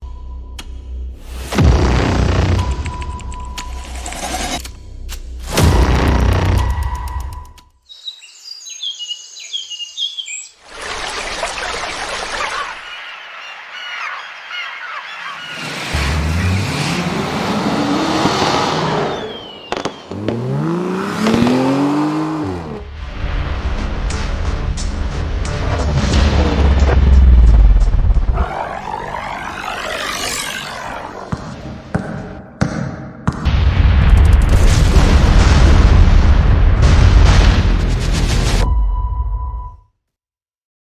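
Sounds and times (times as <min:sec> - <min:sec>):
bird chirping: 0:07.8 - 0:16.0, 0:18.9 - 0:20.7
chorus of chirping birds: 0:07.9 - 0:16.6, 0:18.9 - 0:20.3
deep rumbling boom: 0:33.5 - 0:39.2.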